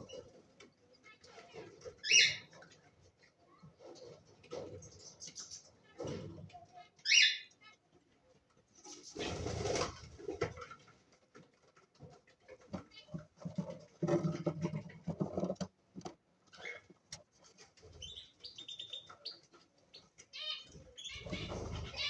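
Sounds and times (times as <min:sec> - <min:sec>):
cage birds chirping: 0:00.0 - 0:06.2, 0:06.9 - 0:10.1, 0:11.3 - 0:13.6, 0:16.4 - 0:22.0.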